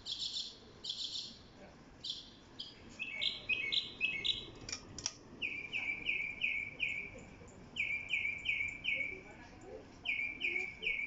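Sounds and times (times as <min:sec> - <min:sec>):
songbird singing: 0:00.0 - 0:11.0
sharp clicks: 0:04.6 - 0:05.2.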